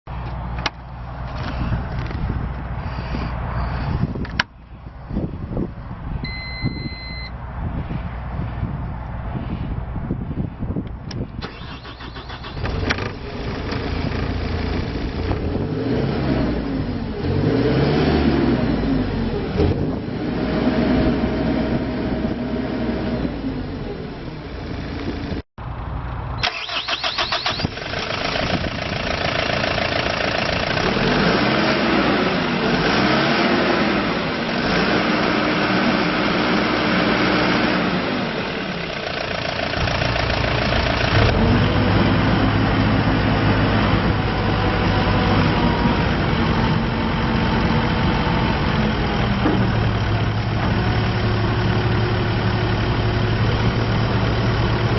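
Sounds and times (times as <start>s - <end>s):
diesel engine starting and revving: 11.3s - 54.9s.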